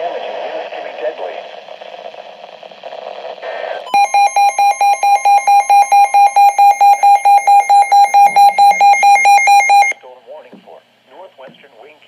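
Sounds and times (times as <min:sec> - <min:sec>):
pulsing electronic alarm beep: 0:03.9 - 0:10.0.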